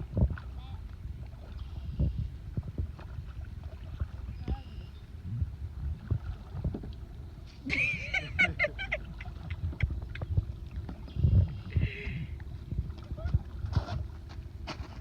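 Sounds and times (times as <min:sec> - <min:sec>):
paddle knocks and splashes: 0:00.0 - 0:04.7, 0:05.8 - 0:07.6, 0:09.0 - 0:11.8, 0:12.8 - 0:15.0.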